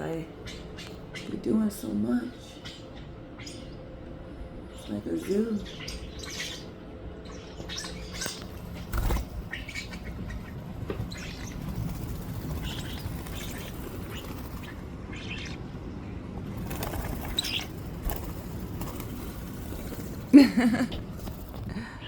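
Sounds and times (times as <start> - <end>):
birds chirping: 0.0 - 22.0
wings flapping: 7.3 - 15.6, 16.4 - 22.0.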